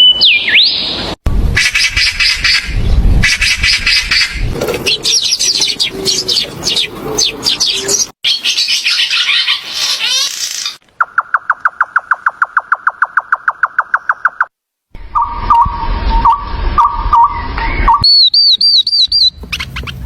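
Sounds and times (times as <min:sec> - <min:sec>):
birds chirping and twittering: 0:01.6 - 0:20.0.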